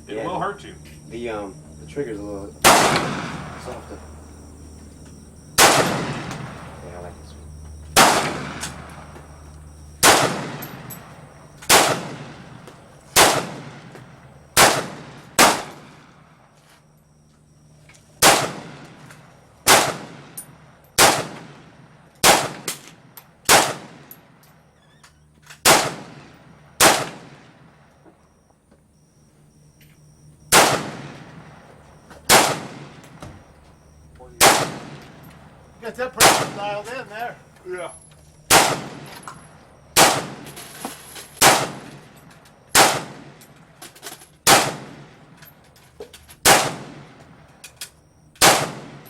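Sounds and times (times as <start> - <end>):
rifle single shots: 2.5 - 16.5, 18.2 - 24.4, 25.6 - 27.9, 30.4 - 37.3, 38.4 - 43.8, 44.4 - 45.7, 46.4 - 47.8, 48.4 - 49.0.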